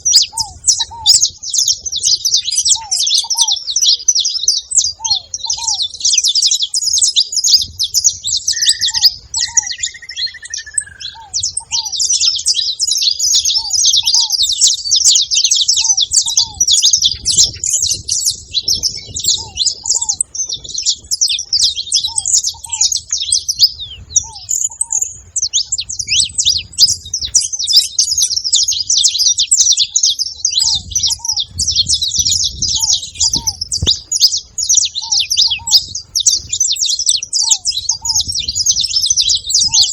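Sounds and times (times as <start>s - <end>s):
finches chattering: 0.0s - 39.9s
drawn-out whistle: 8.5s - 11.4s.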